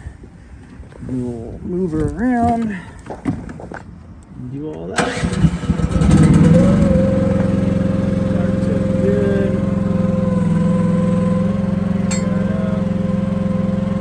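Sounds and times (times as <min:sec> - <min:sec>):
excavator engine idling: 0:05.0 - 0:14.0.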